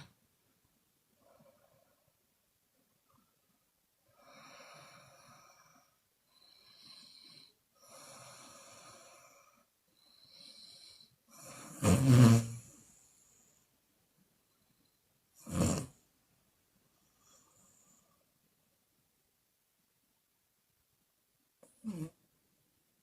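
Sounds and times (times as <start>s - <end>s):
woman snoring: 4.2s - 12.8s, 15.4s - 16.0s, 21.7s - 22.2s.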